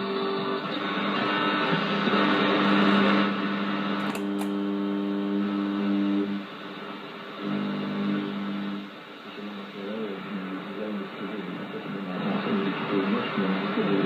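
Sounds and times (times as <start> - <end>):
radio static hiss: 0.0 - 14.0
steady humming tones: 0.0 - 14.0
sharp clicks: 4.0 - 4.6.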